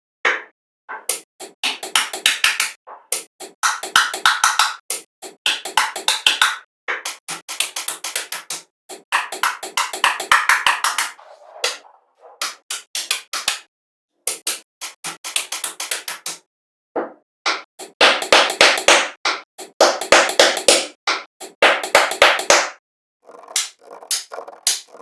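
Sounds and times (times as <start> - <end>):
rapid sharp strikes: 17.8 - 25.0.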